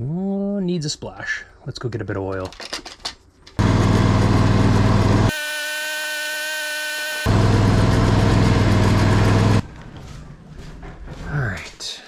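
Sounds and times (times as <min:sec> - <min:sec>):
small engine running: 0:03.6 - 0:09.6
high even whine: 0:05.2 - 0:09.6.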